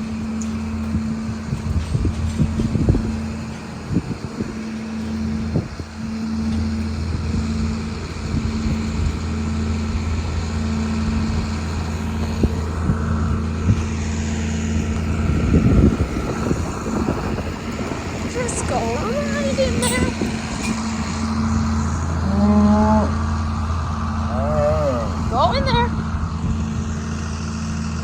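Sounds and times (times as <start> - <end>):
wind buffeting microphone: 0.0 - 22.2, 25.0 - 28.0
low machine hum: 0.0 - 28.0.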